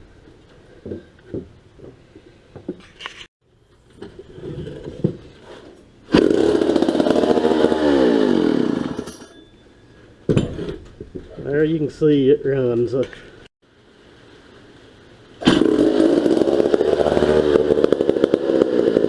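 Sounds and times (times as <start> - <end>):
chainsaw engine running: 6.1 - 9.1, 15.4 - 19.0.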